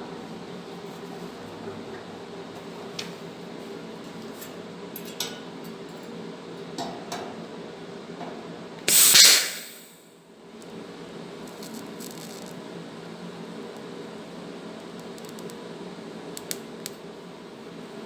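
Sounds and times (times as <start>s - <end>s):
low workshop hum: 0.0s - 18.0s
welding torch hiss: 8.9s - 10.1s.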